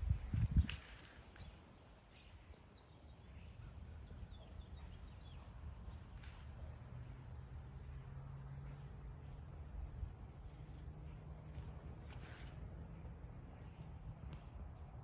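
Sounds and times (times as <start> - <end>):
faint bird chirping: 0.6 - 6.8.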